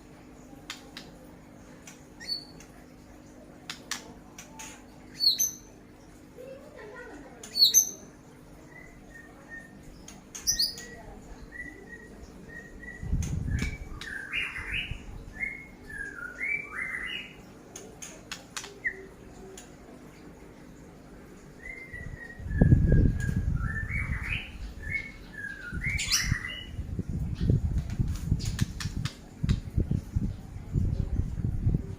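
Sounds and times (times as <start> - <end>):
songbird whistling: 11.5 - 17.4, 21.6 - 26.8.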